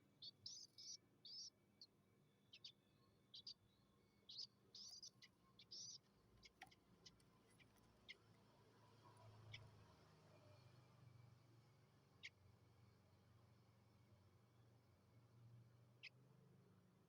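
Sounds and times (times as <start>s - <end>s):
bird chick chirping: 0.2s - 1.6s, 2.5s - 3.6s, 4.3s - 8.2s.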